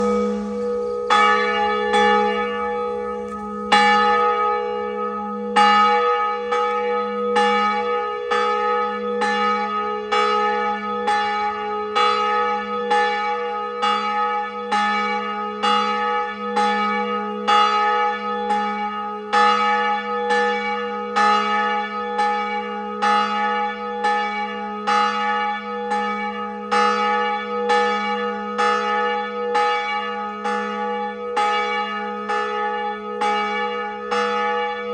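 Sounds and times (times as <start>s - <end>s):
church bell tolling: 0.0s - 34.9s.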